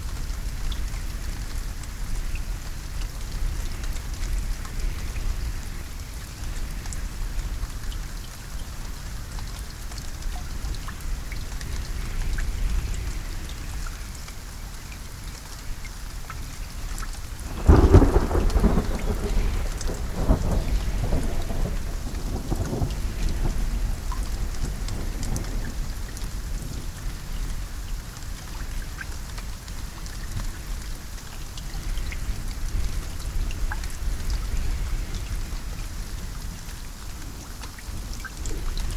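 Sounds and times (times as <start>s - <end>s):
steady rain falling: 0.0s - 38.9s
thunder clap and rumble: 17.3s - 27.9s.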